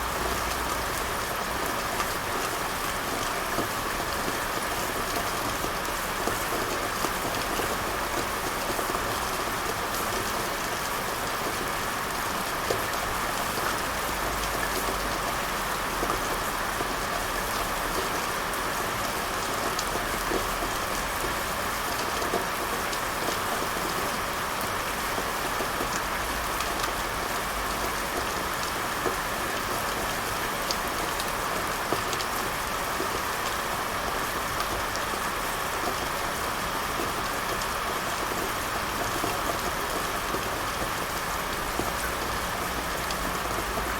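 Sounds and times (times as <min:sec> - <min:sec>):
heavy rain: 0:00.0 - 0:43.9.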